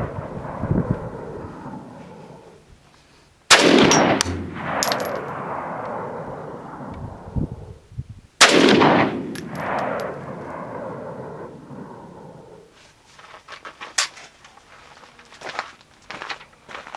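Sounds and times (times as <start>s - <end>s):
rifle shots with echo: 3.5s - 6.3s, 8.4s - 11.1s.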